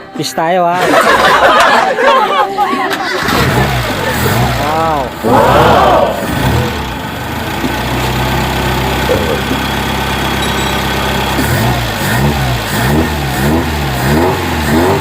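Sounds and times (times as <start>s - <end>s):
engine idling and revving: 3.2s - 15.0s.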